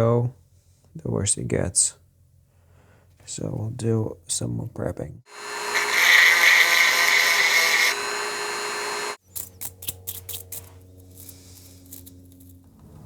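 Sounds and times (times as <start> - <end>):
small power tool running: 5.3 - 9.2.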